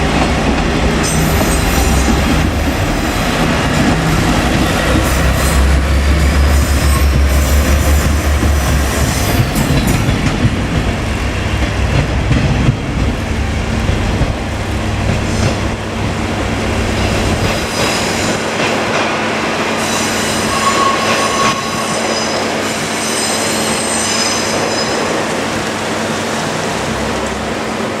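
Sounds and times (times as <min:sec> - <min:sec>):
diesel railcar engine rumble: 0:00.0 - 0:23.8
train rolling noise: 0:00.0 - 0:28.0
high-pitched wheel squeal: 0:19.8 - 0:25.1.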